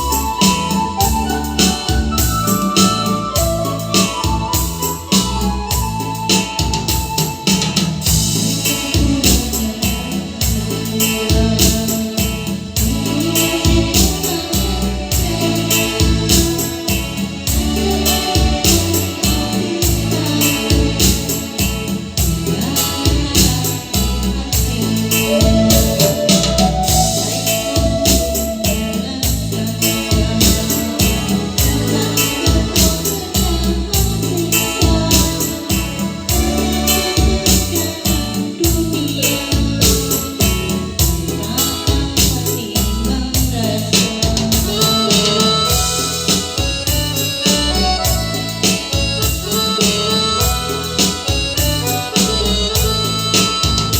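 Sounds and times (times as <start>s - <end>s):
driving beat with bass line: 0.0s - 53.9s
electric keyboard or organ music: 0.0s - 53.9s.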